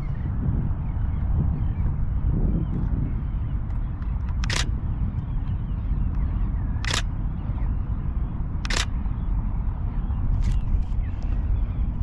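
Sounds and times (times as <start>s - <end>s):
low rumble: 0.0s - 12.0s
camera shutter clatter: 4.3s - 4.7s, 6.8s - 7.1s, 8.6s - 9.0s.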